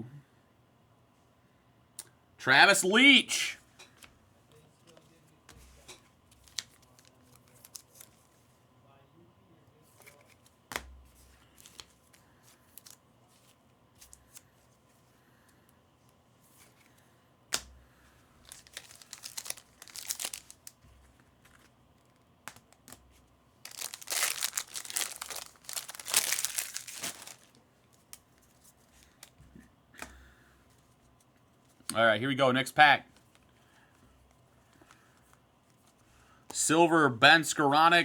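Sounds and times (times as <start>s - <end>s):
plastic wrapper tearing and crinkling: 6.4s - 8.2s, 18.4s - 20.8s, 23.6s - 28.3s
light clicks of card handling: 9.7s - 17.8s, 27.9s - 32.0s.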